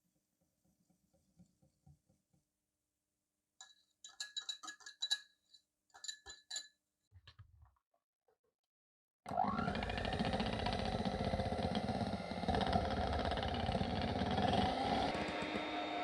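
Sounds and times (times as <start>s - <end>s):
electric kitchen mixer whirring: 9.3s - 16.0s.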